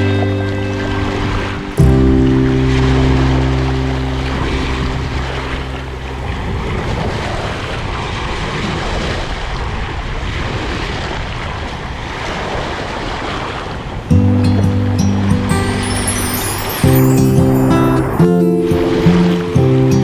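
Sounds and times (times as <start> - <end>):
low held music tones: 0.0 - 7.2, 14.1 - 20.0
sea surf washing: 0.0 - 7.9, 14.0 - 20.0.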